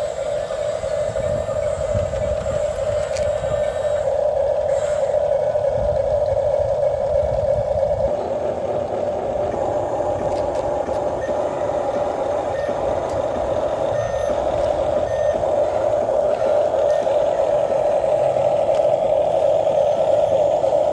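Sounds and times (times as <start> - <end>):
toy truck motor whine: 0.0 - 8.1, 8.8 - 20.9
reversing beeper beeps: 3.4 - 4.2, 11.2 - 17.9.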